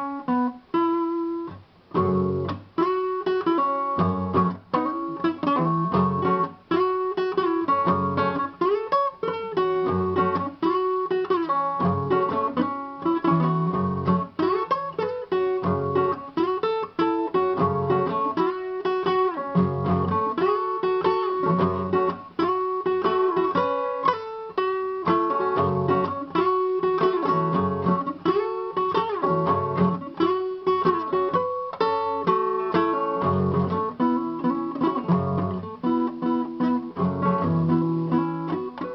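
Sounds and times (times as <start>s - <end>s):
acoustic guitar music: 0.0s - 38.9s.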